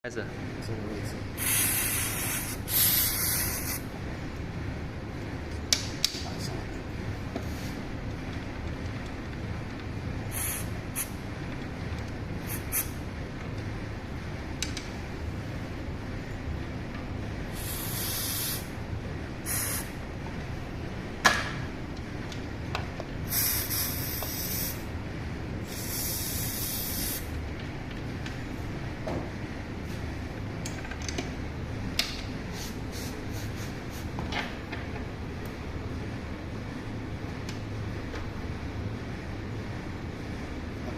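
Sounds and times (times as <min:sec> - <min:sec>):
aerosol spray can hissing: 0:01.4 - 0:03.8, 0:10.3 - 0:11.1, 0:12.4 - 0:12.9, 0:17.5 - 0:18.7, 0:19.5 - 0:19.9, 0:23.3 - 0:24.8, 0:25.7 - 0:27.3.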